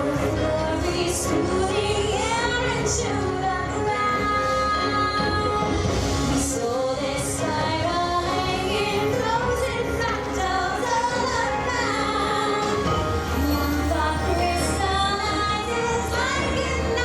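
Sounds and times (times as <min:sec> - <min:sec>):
soundtrack music: 0:00.0 - 0:17.0
woman singing: 0:00.0 - 0:17.0.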